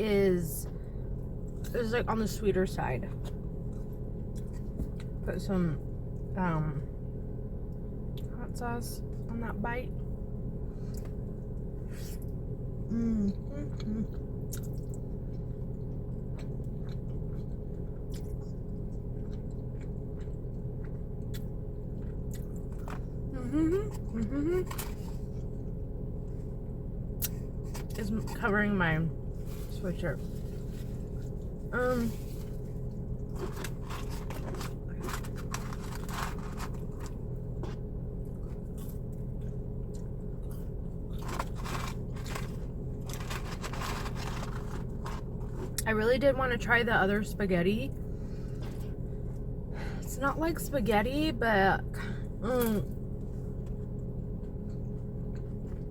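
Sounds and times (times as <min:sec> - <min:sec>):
steady low hum: 0:00.0 - 0:55.9
person chewing crunchy food: 0:03.2 - 0:05.2, 0:13.3 - 0:28.0, 0:30.4 - 0:45.8
chewing spaghetti: 0:13.3 - 0:23.1.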